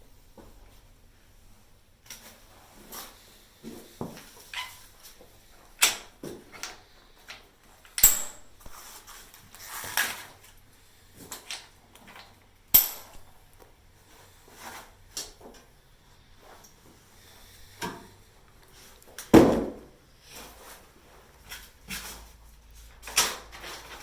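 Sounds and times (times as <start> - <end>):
knocks and clacks of parts: 5.8 - 8.8.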